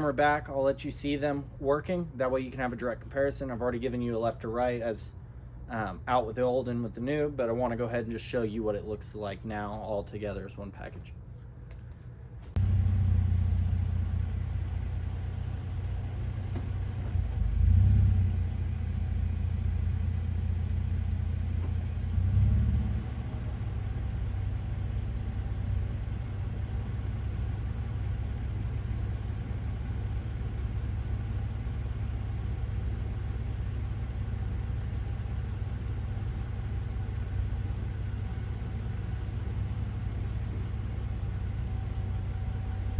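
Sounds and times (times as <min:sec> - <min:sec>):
engine idling: 0:12.5 - 0:42.9.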